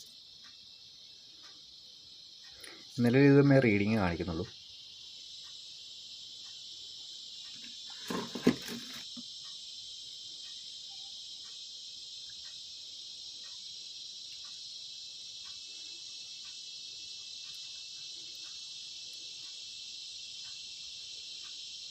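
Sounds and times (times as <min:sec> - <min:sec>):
crickets chirping: 0:00.0 - 0:21.9
clatter of knocks: 0:08.0 - 0:09.0.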